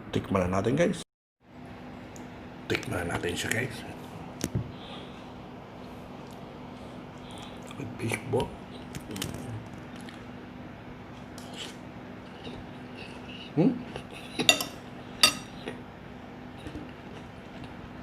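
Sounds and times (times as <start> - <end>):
faint steady hum: 0.0 - 18.0
cutlery clinking against dish: 14.4 - 15.6.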